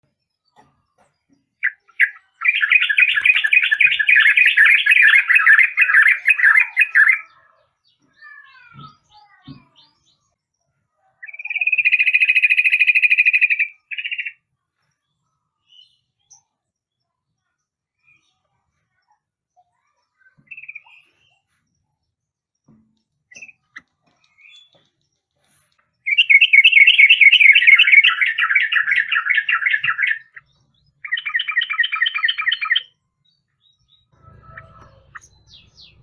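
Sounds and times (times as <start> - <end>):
bird chattering song: 0.0 - 10.3, 11.2 - 14.4, 19.0 - 22.1, 26.0 - 36.0.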